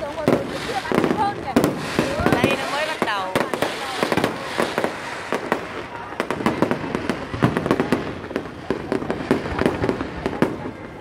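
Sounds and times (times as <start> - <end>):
fireworks bangs and cracks: 0.0 - 11.0
rumble of firework bursts: 0.0 - 11.0.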